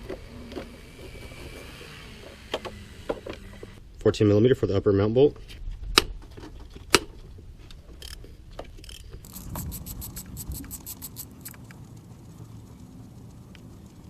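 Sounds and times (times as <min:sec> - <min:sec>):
ratchet wrench clicking: 0:08.0 - 0:08.2, 0:08.8 - 0:11.7.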